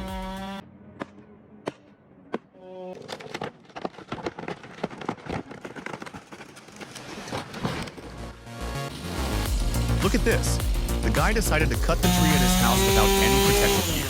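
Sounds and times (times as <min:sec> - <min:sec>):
wood cracking: 0:03.0 - 0:08.3.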